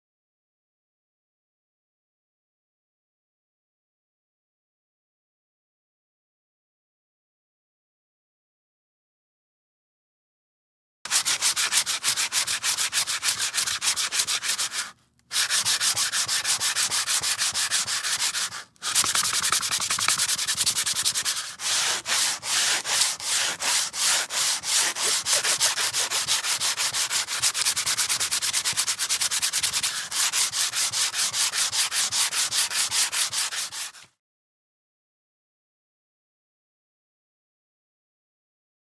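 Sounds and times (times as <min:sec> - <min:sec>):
sandpaper rubbing back and forth: 0:11.1 - 0:34.1.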